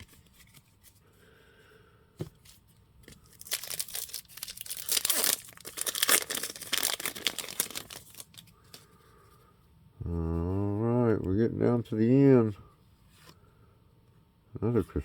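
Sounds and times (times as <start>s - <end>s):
foil wrapper crinkling and tearing: 3.2s - 8.5s.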